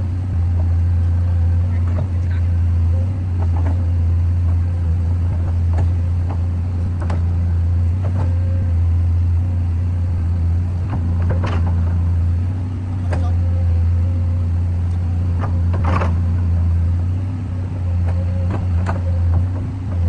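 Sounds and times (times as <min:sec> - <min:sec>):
diesel engine droning: 0:00.0 - 0:20.0.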